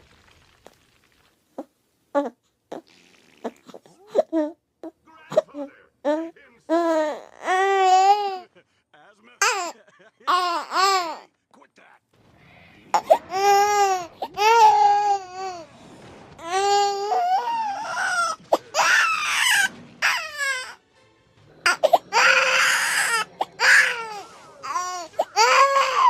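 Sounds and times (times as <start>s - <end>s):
baby crying and screaming: 5.3s - 8.4s, 10.3s - 11.2s, 12.9s - 15.7s, 16.4s - 20.8s, 21.6s - 26.0s.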